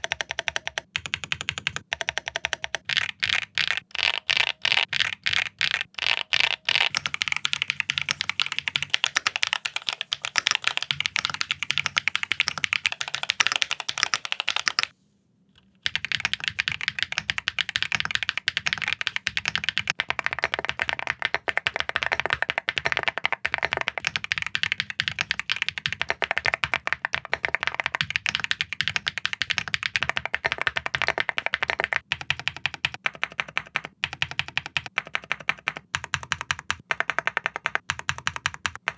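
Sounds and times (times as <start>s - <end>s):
mechanical keyboard typing: 0.0s - 14.9s, 15.8s - 38.9s.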